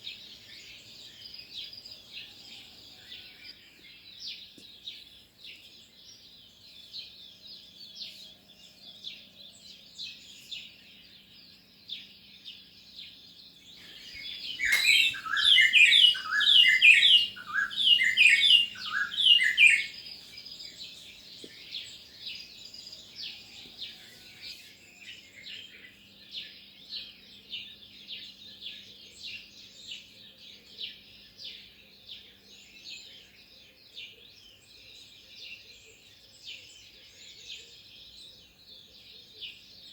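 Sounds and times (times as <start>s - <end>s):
small birds chirping: 0.0s - 39.9s
bird singing downward-sliding notes: 14.0s - 20.6s.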